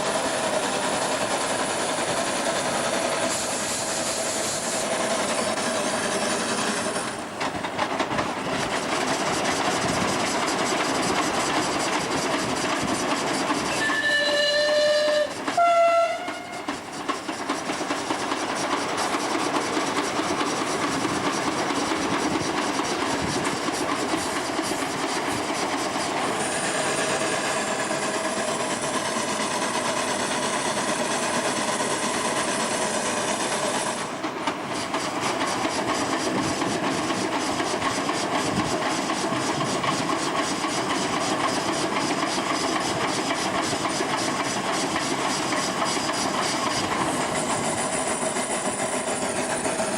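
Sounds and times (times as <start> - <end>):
train rolling with wheel clatter: 0.0 - 49.9
thin high squeal: 13.6 - 16.6
train whistle blasts: 13.7 - 16.8.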